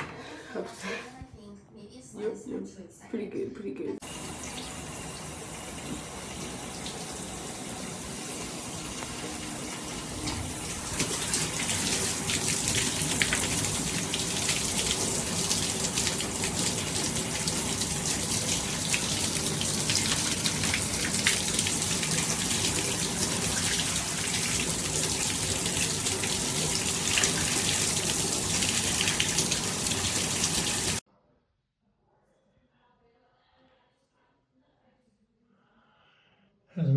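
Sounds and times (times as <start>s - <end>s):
shower spraying water: 4.0s - 31.0s.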